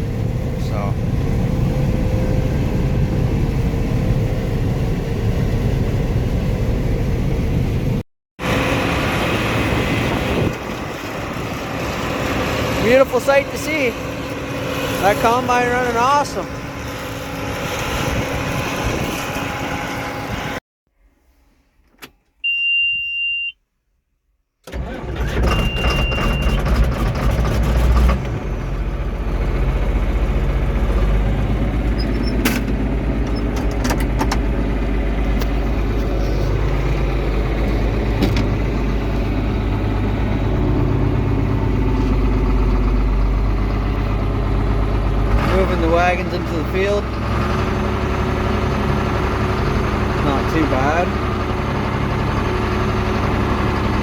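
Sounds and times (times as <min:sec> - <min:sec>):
diesel engine running: 0:00.0 - 0:20.6, 0:24.7 - 0:54.0
high warning beep: 0:22.4 - 0:23.6
engine cranking and catching: 0:24.6 - 0:54.0.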